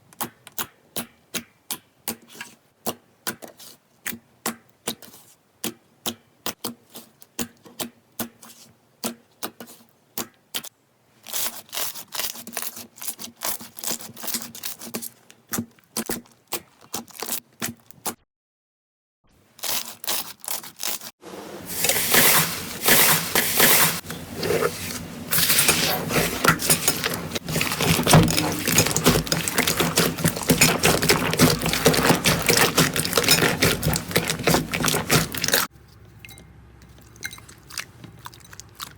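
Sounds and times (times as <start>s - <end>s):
slime clicking and crackling: 26.5s - 35.7s.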